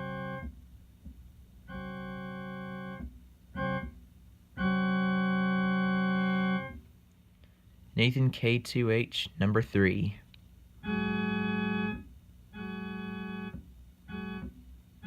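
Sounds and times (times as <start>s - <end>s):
electronic keyboard air horn chord: 0.0s - 0.5s, 1.7s - 3.0s, 3.6s - 4.0s, 4.6s - 6.8s, 10.8s - 14.6s.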